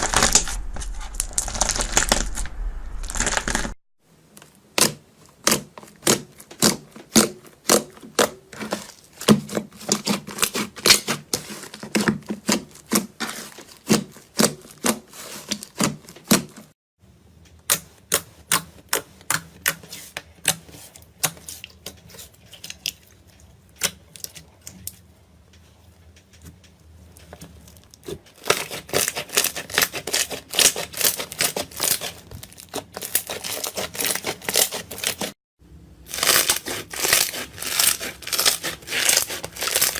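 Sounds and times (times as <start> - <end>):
crunchy material crackling: 0.0 - 3.8, 36.1 - 39.9
low hum: 0.0 - 3.8.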